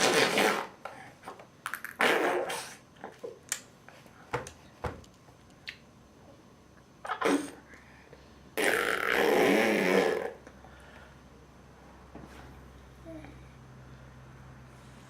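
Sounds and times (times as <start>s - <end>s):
baby blowing raspberries: 0.0s - 1.0s, 2.0s - 2.8s, 7.0s - 7.8s, 8.6s - 10.5s.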